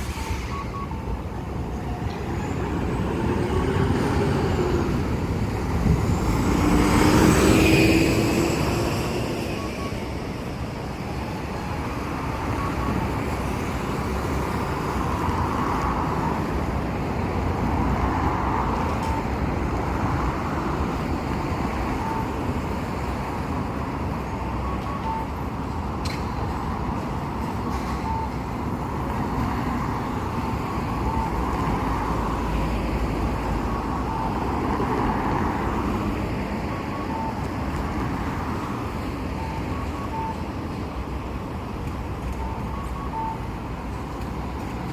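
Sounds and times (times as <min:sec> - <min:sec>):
traffic and trams rumbling: 0:00.0 - 0:44.9
faint high beeps: 0:42.3 - 0:43.5.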